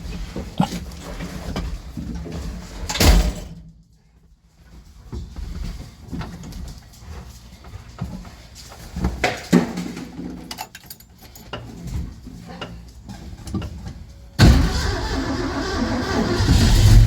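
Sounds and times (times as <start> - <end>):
car engine starting and running: 14.4 - 17.0.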